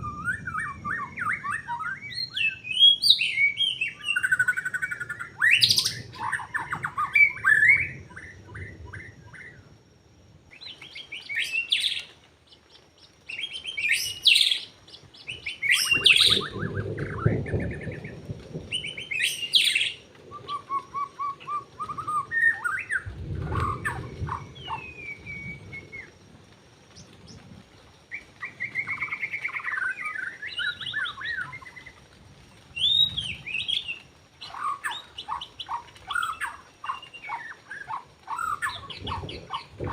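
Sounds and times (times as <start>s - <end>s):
songbird whistles and trills: 0.0s - 9.7s, 10.5s - 26.3s, 28.1s - 32.0s, 32.7s - 39.9s
low rumbling noise: 22.8s - 27.8s.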